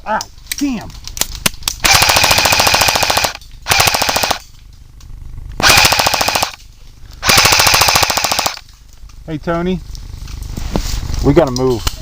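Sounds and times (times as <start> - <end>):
airsoft rifle firing bursts: 1.8 - 4.4, 5.6 - 6.6, 7.2 - 8.6.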